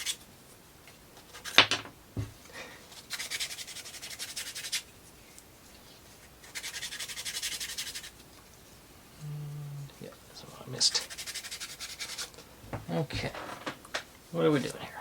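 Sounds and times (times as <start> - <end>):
sanding wood rasping: 3.1 - 4.8, 6.4 - 8.1, 10.9 - 12.3.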